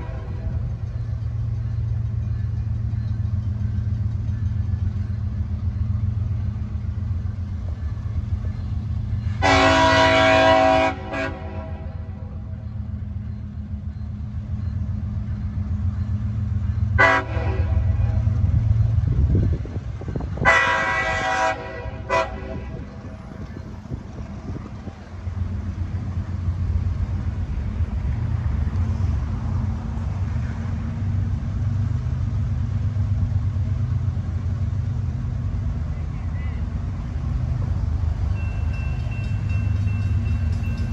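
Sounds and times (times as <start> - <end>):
locomotive air horn blasts: 0.0 - 0.7, 9.3 - 12.5, 17.0 - 18.6, 20.4 - 23.2
diesel engine droning: 0.0 - 40.9.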